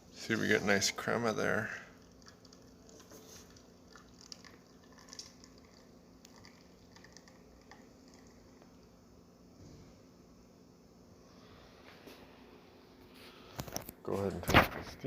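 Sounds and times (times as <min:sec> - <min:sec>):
espresso machine hum: 0:00.5 - 0:09.2
small clicks and drips: 0:01.9 - 0:08.9.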